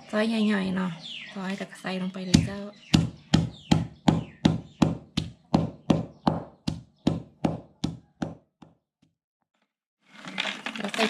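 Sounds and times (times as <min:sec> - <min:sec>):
knife chopping on a board: 0:02.4 - 0:08.4.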